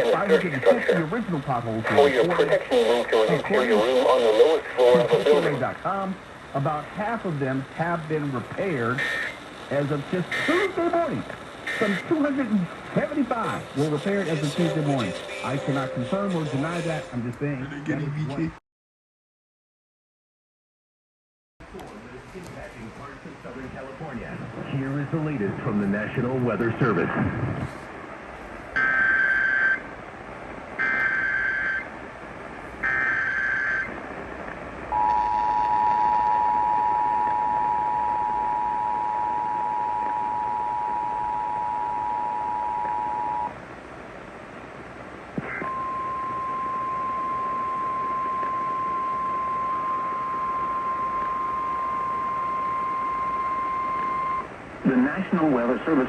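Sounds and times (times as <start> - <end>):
digital data bursts: 8.8 - 17.2
steady alarm tone: 13.4 - 17.2, 34.9 - 43.5, 45.7 - 54.5
two-tone attention signal: 13.7 - 17.2.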